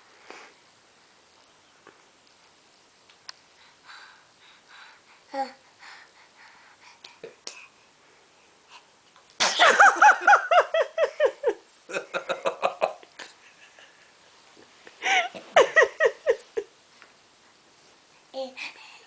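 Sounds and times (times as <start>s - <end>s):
baby sneezing: 9.4s - 9.8s.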